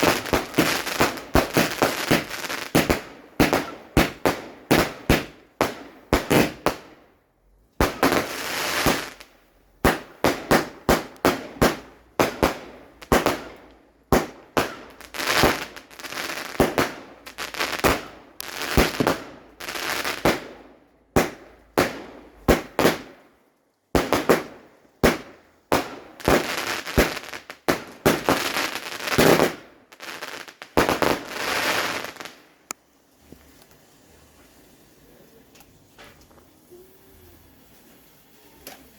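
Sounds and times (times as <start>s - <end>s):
firework crackling hiss: 0.0s - 6.8s, 7.8s - 20.6s, 24.0s - 38.9s
firework bangs: 0.0s - 7.0s, 7.8s - 23.2s, 23.9s - 32.4s.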